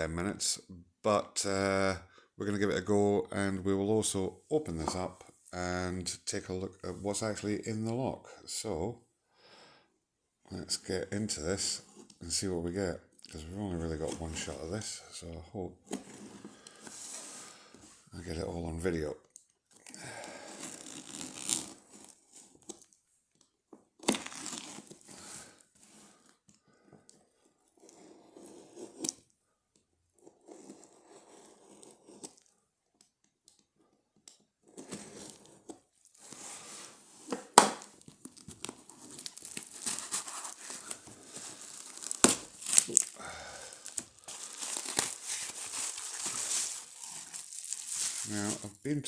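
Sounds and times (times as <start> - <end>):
packaging rustling and tearing: 20.5 - 22.2, 24.1 - 25.5, 34.8 - 48.8.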